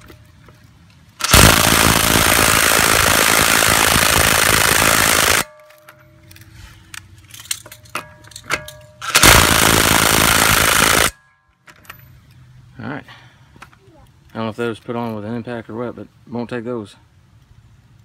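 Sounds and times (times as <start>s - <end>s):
light metal clanks: 5.5s - 9.1s.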